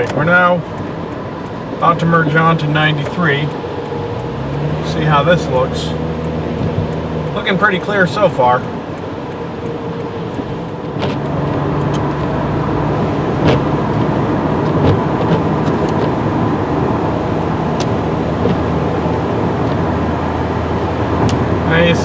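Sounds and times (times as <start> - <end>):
light ticks: 0.0 - 12.4
car engine and road noise: 0.0 - 22.0.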